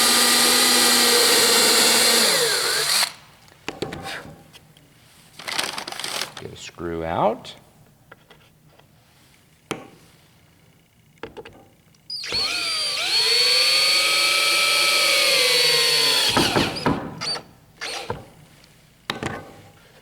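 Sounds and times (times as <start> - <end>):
power drill driving screw: 0.0 - 3.2, 12.1 - 18.2.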